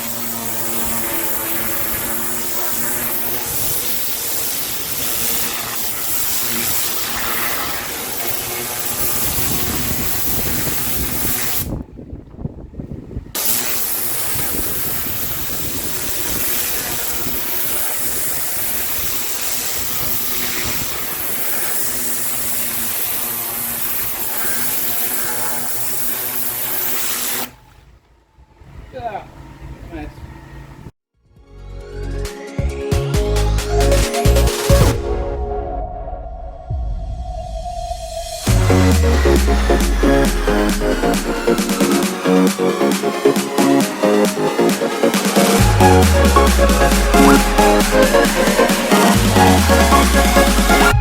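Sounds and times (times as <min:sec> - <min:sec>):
water spray hissing on paving: 0:00.0 - 0:11.7, 0:13.4 - 0:27.5
pressure washer motor hum: 0:00.0 - 0:11.8, 0:13.4 - 0:27.5, 0:38.5 - 0:51.0.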